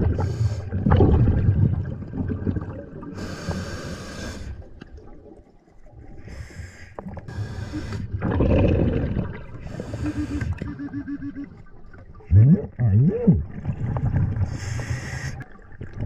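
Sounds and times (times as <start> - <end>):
low rumble of moving water: 0.0 - 16.0
hissing breaths through snorkel: 3.2 - 4.7, 6.2 - 8.2, 9.6 - 10.6, 14.4 - 15.4.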